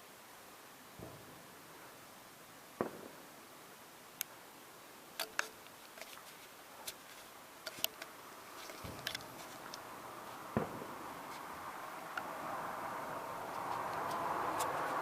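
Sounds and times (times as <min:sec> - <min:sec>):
dull fireworks booms: 0:01.0 - 0:01.5, 0:02.8 - 0:03.3, 0:08.8 - 0:11.7
fireworks popping and crackling: 0:01.0 - 0:01.5, 0:02.8 - 0:03.3, 0:08.0 - 0:15.0.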